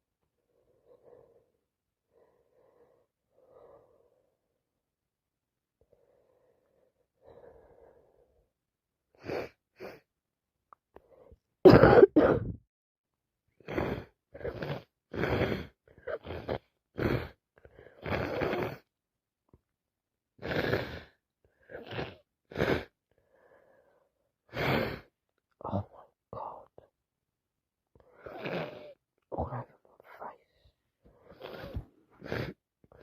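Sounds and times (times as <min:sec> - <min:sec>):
woman coughing harshly: 0:11.7 - 0:12.6.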